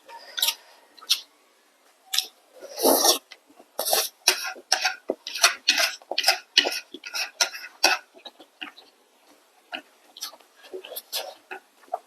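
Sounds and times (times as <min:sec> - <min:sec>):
crunching chews: 0:00.3 - 0:01.3.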